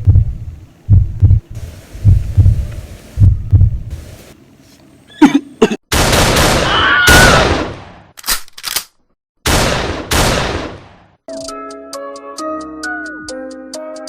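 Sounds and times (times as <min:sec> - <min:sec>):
heavy gunshots echoing: 0:05.9 - 0:08.0, 0:09.4 - 0:11.0.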